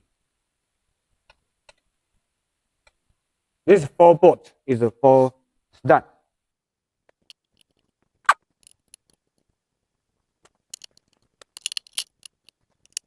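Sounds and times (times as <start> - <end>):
metal bolts and tools clicking: 8.6 - 9.2, 10.8 - 13.0.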